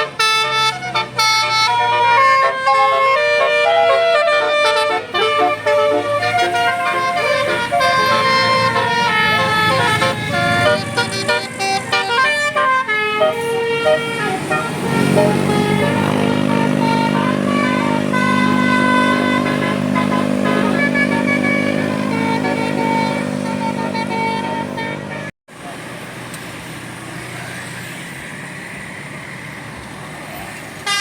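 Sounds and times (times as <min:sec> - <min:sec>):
bus musical horn melody: 0:00.0 - 0:25.4, 0:30.8 - 0:31.0
sustained low chord: 0:14.5 - 0:25.3.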